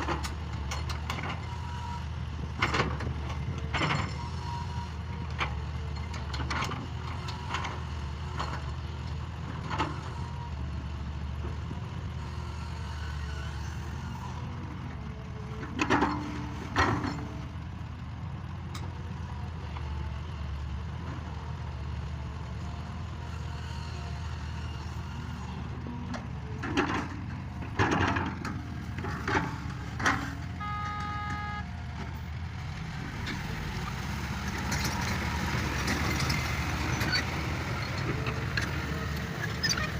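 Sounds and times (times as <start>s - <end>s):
diesel engine running: 0.0s - 39.9s
short electronic beep: 30.6s - 31.7s.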